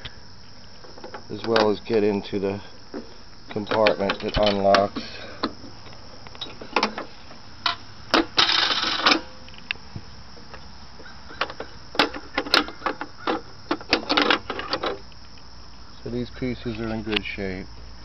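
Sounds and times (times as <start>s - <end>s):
metal clicks and clanks: 0.8s - 2.1s, 3.5s - 9.7s, 11.4s - 15.0s
loose coins rattling: 8.4s - 9.3s.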